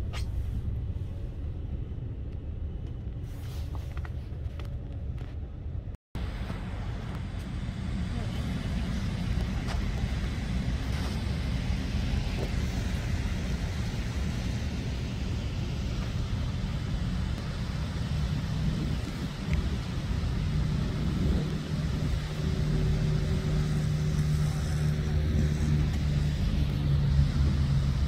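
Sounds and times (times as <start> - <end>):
low engine hum: 0.0 - 28.0
vehicle road rumble from inside: 0.0 - 28.0.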